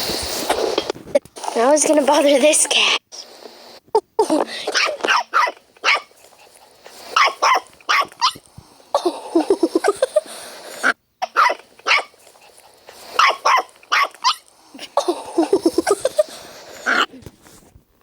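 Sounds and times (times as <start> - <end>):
dog barking: 4.7 - 6.2, 7.0 - 8.4, 11.2 - 12.2, 13.0 - 14.5
dog growling: 9.2 - 17.2.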